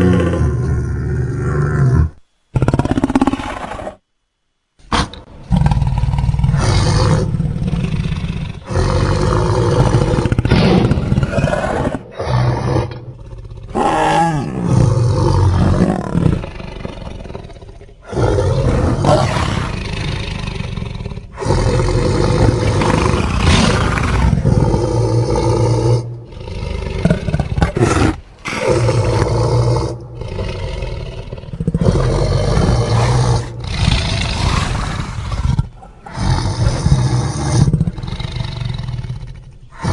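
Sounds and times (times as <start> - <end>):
creature roars and growls: 0.0 - 4.0, 13.6 - 39.1.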